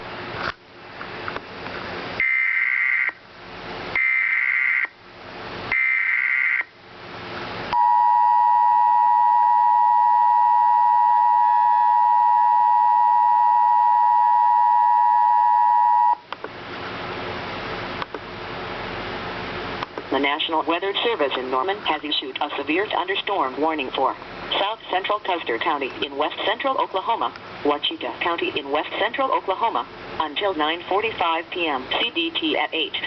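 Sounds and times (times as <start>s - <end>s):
two-tone attention signal: 7.8s - 16.2s.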